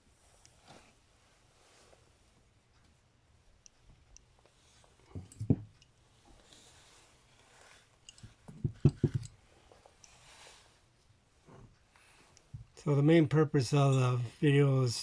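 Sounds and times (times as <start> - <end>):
objects thudding on work surface: 8.5 - 9.3.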